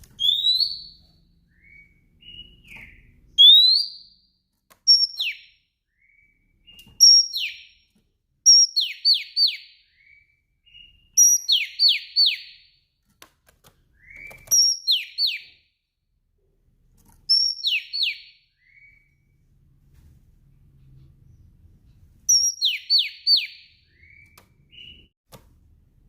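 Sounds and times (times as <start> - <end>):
bird calling with whistles: 0.2 - 4.2, 4.9 - 7.8, 8.5 - 12.7, 14.0 - 15.7, 17.3 - 19.1, 22.3 - 25.1.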